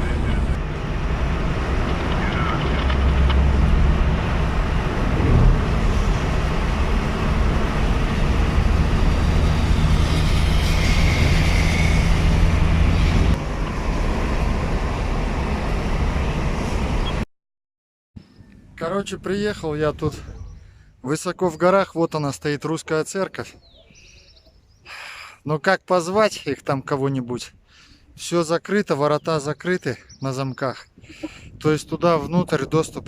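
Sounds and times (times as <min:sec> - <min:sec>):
vehicle engine and road noise: 0:00.0 - 0:17.3.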